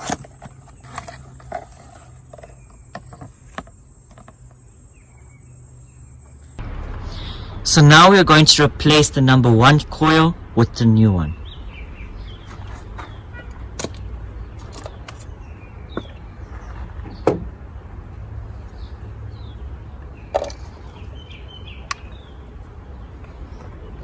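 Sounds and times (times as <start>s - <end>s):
low steady rumble: 0.0s - 13.0s.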